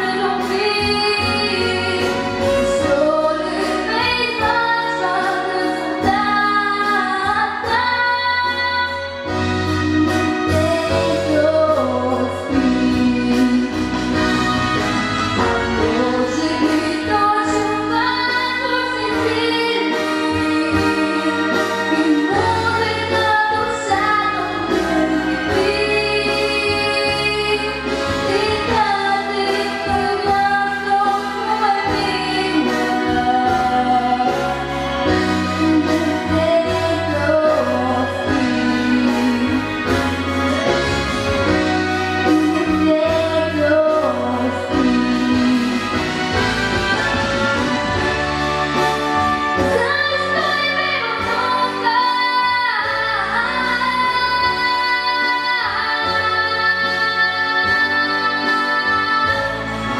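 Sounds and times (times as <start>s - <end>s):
woman singing with vibrato: 0.0s - 48.4s, 49.2s - 59.9s
instrumental accompaniment: 0.0s - 59.9s.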